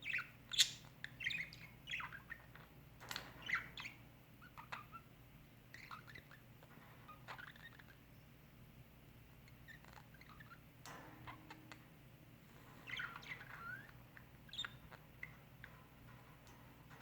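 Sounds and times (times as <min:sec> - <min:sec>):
budgerigars chirping: 0:00.0 - 0:02.7, 0:03.4 - 0:05.1, 0:05.8 - 0:06.4, 0:07.1 - 0:08.0, 0:12.8 - 0:15.8.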